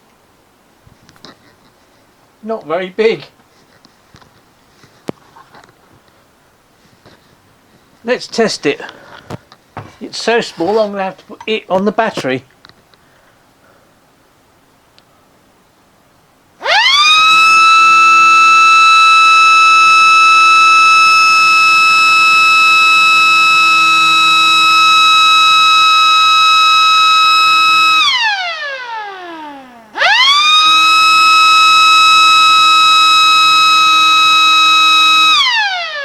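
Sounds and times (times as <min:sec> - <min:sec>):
electric mechanical siren wailing: 0:16.6 - 0:36.0.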